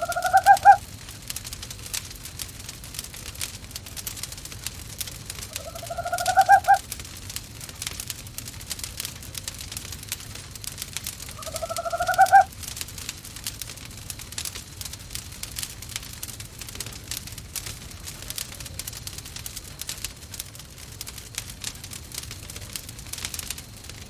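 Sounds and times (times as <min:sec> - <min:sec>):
quavering owl call: 0:00.0 - 0:00.8, 0:05.5 - 0:06.8, 0:11.3 - 0:12.5
fireplace crackling and popping: 0:00.0 - 0:24.0.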